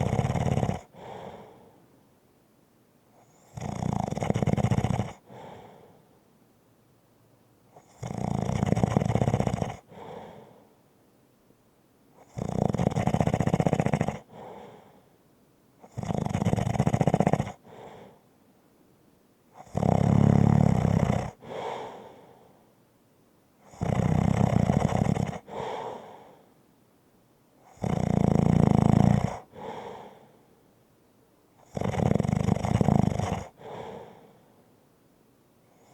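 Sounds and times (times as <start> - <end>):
rumbling snoring: 0.0 - 1.6, 3.2 - 6.0, 7.7 - 10.6, 12.2 - 15.0, 15.8 - 18.2, 19.6 - 22.2, 23.6 - 26.4, 27.6 - 30.2, 31.6 - 34.4.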